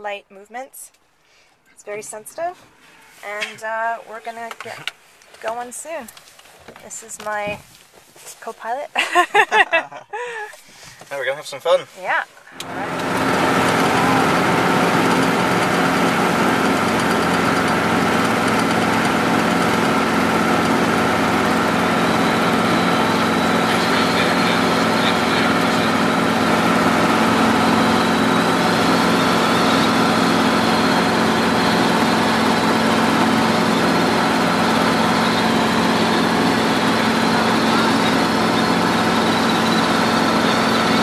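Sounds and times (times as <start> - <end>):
helicopter engine and rotor drone: 12.5 - 41.0.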